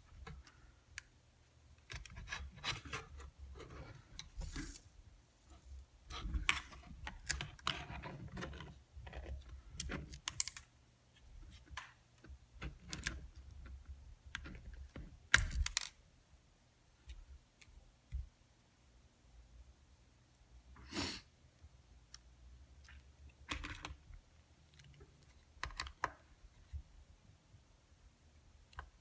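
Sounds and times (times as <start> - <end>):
clicks and taps of small parts: 9.8 - 10.7, 14.3 - 16.0, 24.7 - 26.8.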